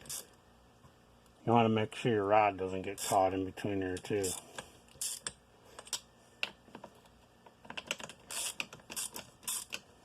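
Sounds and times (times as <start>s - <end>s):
metal parts clicking and tapping: 7.6s - 9.9s.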